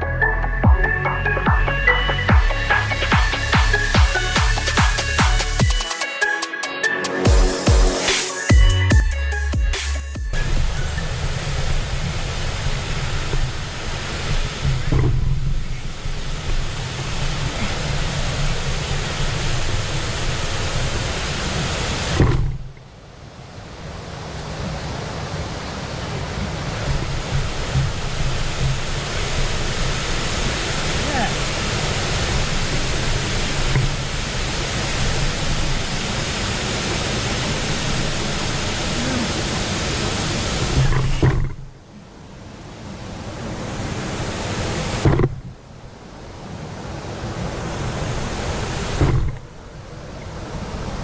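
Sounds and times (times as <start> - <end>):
river water rushing: 1.2 - 8.9, 10.3 - 51.0
wind buffeting microphone: 10.6 - 51.0.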